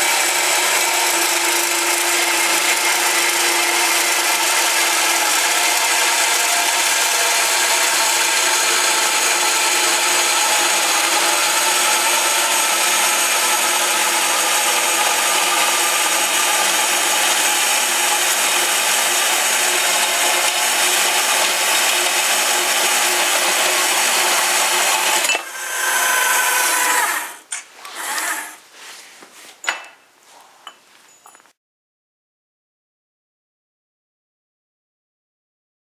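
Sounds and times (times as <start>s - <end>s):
band saw sawing: 0.0s - 28.6s.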